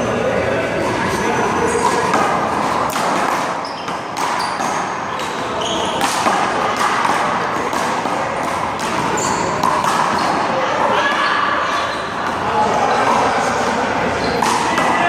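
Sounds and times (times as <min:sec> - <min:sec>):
steady background noise: 0:00.0 - 0:15.0
handball slapping wall and ground: 0:01.8 - 0:11.3.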